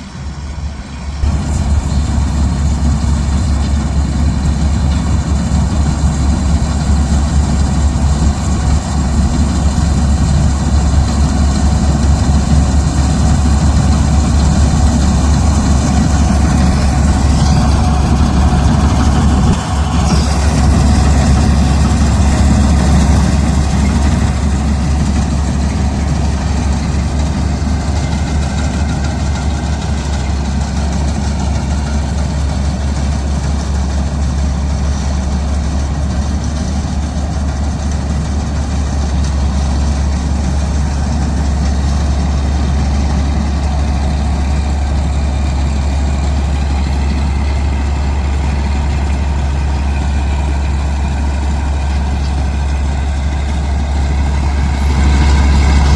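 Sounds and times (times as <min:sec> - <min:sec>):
diesel engine droning: 0:00.0 - 0:55.9.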